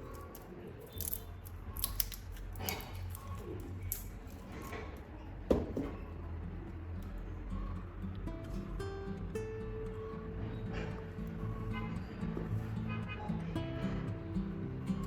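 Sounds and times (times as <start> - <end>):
clicks and scrapes of small parts: 0.0 - 5.0.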